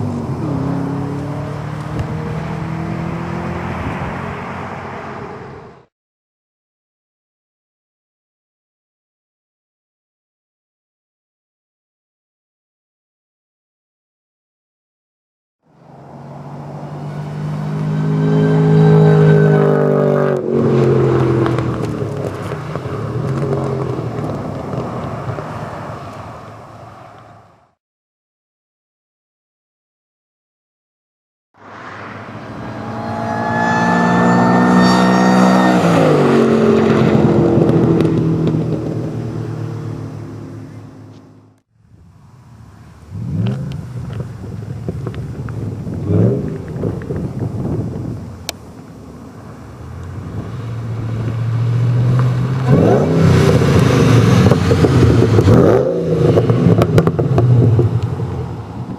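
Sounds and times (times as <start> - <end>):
car engine accelerating: 0.0 - 5.9, 15.7 - 26.4, 31.6 - 58.9
supercharger whine: 15.7 - 24.7, 31.6 - 58.9.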